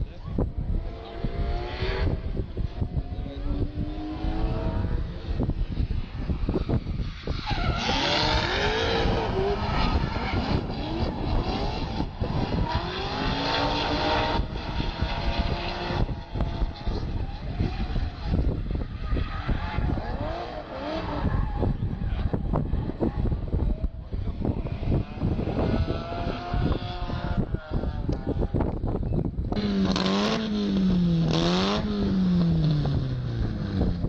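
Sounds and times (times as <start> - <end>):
car engine revving: 6.2 - 28.4, 29.5 - 34.0.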